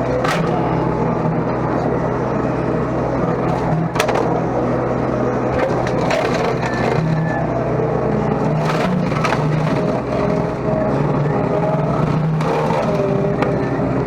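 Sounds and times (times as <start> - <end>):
excavator engine running: 0.0 - 14.0.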